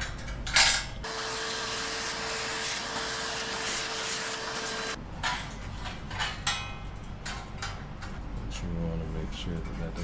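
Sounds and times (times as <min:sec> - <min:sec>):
air tool running: 0:01.0 - 0:05.0.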